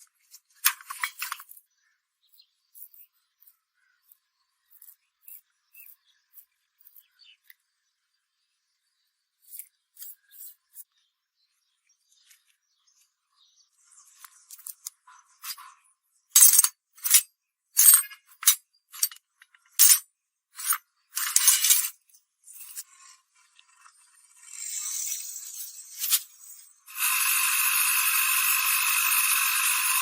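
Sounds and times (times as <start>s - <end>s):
scraping on metal: 14.6s - 15.8s, 16.4s - 20.0s, 20.6s - 26.6s.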